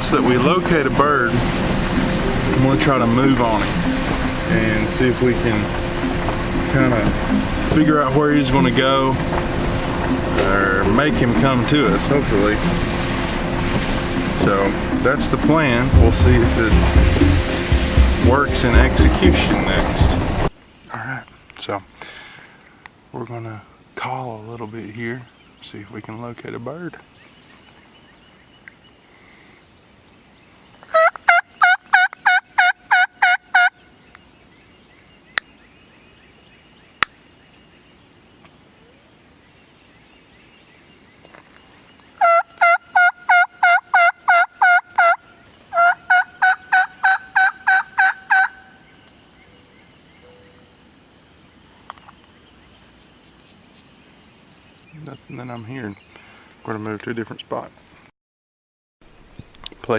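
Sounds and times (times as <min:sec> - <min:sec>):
turkey call yelps: 0:30.9 - 0:33.7, 0:42.2 - 0:48.7.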